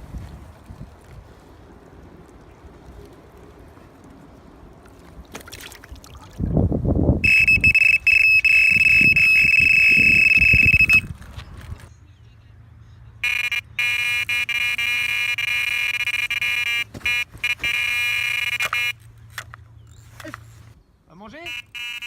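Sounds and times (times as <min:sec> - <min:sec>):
high bite alarm tone: 0:07.2 - 0:11.0, 0:13.2 - 0:18.9, 0:21.4 - 0:22.0
lower buzzy bite alarm tone: 0:07.2 - 0:11.0, 0:13.2 - 0:18.9, 0:21.5 - 0:22.0.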